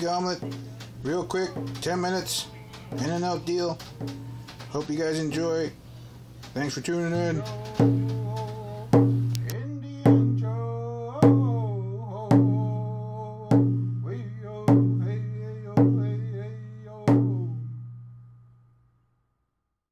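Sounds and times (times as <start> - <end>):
slow drum hits: 0.0 - 4.5, 7.4 - 18.6.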